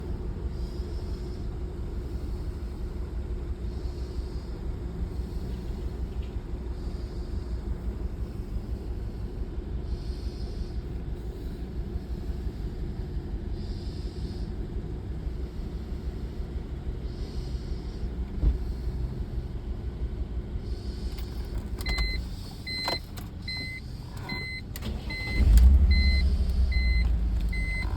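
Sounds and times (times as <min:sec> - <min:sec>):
car engine running with misfire: 0:00.0 - 0:27.9.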